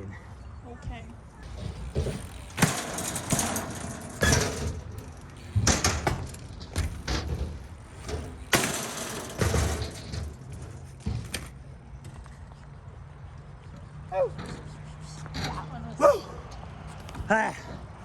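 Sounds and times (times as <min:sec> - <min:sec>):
bike tyres rolling: 0:01.1 - 0:13.7
bike landing knocks and scrapes: 0:01.4 - 0:11.8.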